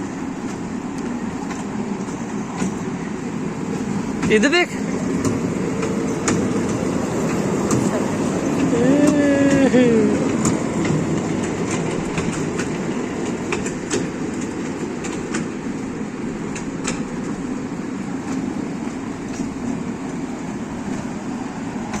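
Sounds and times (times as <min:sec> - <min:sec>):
carriages clicking and rattling: 0:00.3 - 0:22.0
toy train rumbling: 0:04.3 - 0:15.4.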